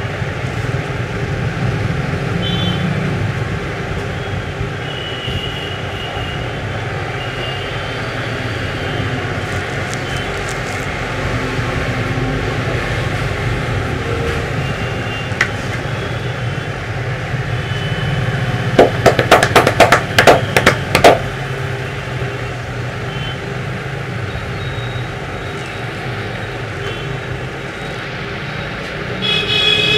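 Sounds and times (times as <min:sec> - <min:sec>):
street traffic noise: 0:00.0 - 0:29.9
hands slapping a head: 0:18.8 - 0:21.2.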